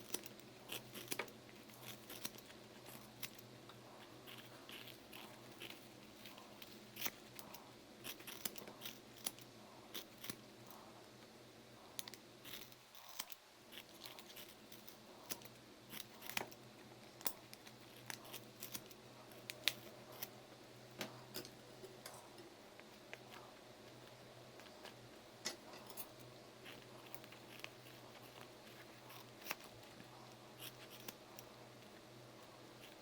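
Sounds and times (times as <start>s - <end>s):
faint steady hum: 0.0s - 33.0s.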